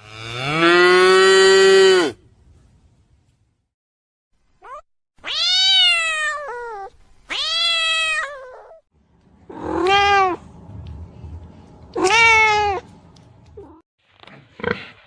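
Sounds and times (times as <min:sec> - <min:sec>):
cat meowing: 0:04.6 - 0:08.8, 0:09.5 - 0:10.4, 0:12.0 - 0:12.8.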